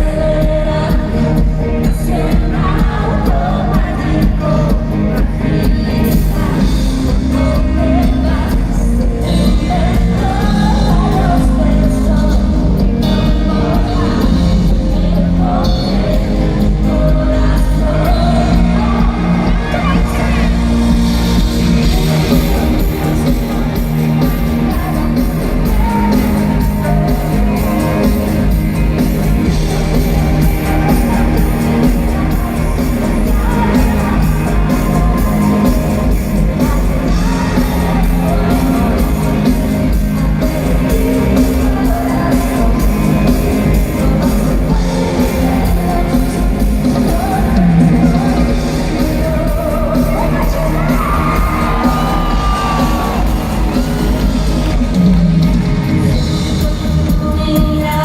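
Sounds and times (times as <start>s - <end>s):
crowd shouting and yelling: 0.0s - 58.0s
live pop concert music: 0.0s - 58.0s
person singing: 0.0s - 58.0s.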